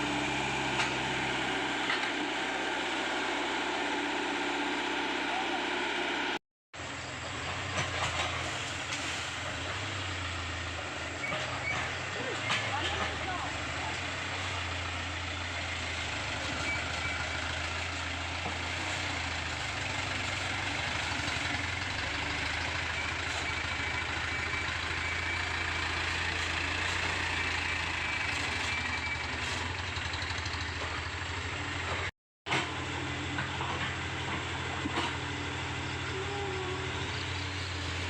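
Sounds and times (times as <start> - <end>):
excavator diesel engine droning: 0.0 - 38.0.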